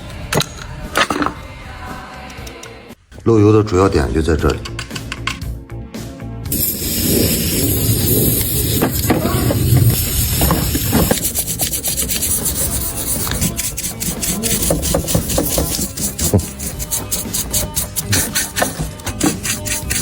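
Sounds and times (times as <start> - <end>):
hand rubbing and scraping a part: 6.5 - 20.0.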